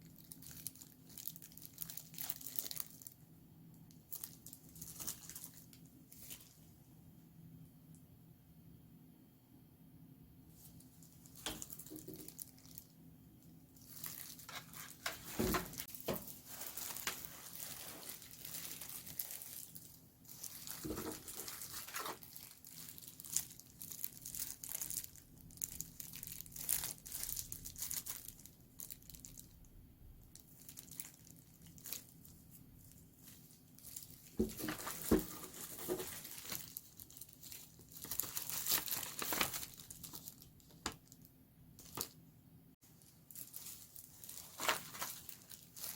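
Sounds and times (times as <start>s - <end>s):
packaging tearing and rustling: 0.1s - 3.1s, 11.2s - 12.9s, 13.8s - 29.6s, 33.2s - 41.2s, 43.0s - 45.9s.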